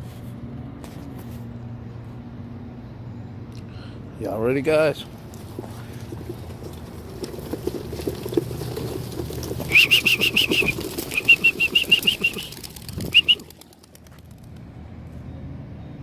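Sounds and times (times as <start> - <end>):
pigeon wings flapping: 5.4 - 14.7.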